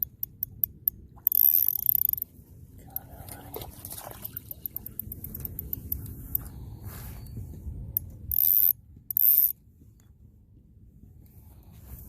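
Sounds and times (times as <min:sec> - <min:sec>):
fishing reel clicking and whirring: 0:00.0 - 0:02.3, 0:04.3 - 0:06.5, 0:08.0 - 0:09.6.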